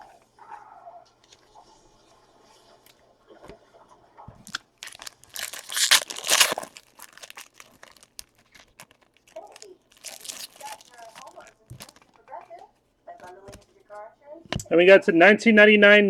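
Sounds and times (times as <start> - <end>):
foil pack crinkling and tearing: 4.5 - 13.6.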